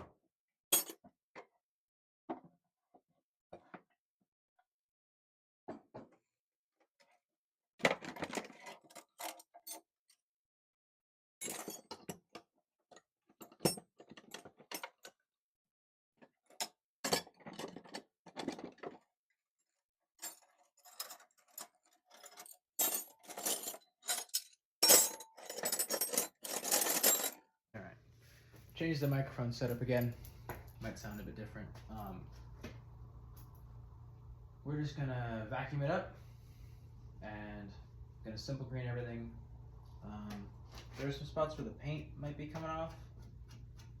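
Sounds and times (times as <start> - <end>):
metal tools clinking and clattering: 11.4 - 12.2, 20.2 - 27.4.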